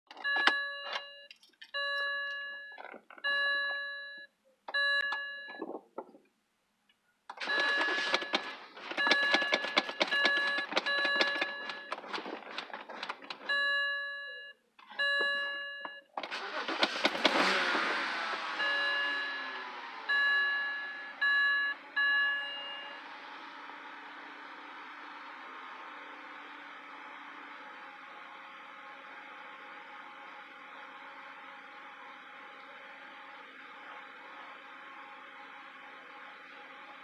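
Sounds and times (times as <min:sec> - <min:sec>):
dashboard warning chime: 0:00.2 - 0:05.8, 0:07.4 - 0:12.2, 0:12.9 - 0:17.4, 0:18.5 - 0:23.6
car engine cranking on starter: 0:07.3 - 0:13.8, 0:16.2 - 0:37.0.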